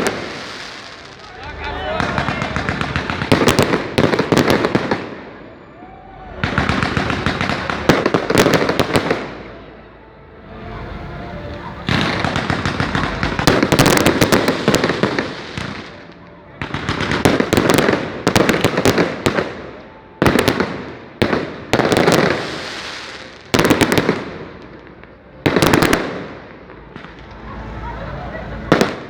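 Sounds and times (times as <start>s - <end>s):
firecrackers popping: 0.0s - 5.5s, 6.4s - 9.5s, 11.5s - 29.0s.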